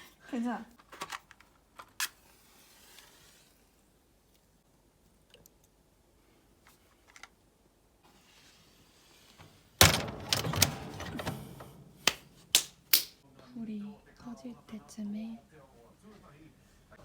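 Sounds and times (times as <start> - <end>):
firewood and metal door clattering: 9.5 - 12.5.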